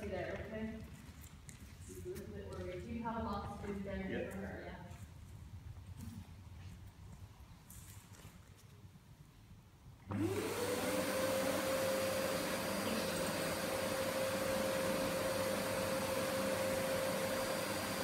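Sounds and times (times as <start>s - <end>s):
vacuum cleaner motor whine: 10.1s - 18.0s.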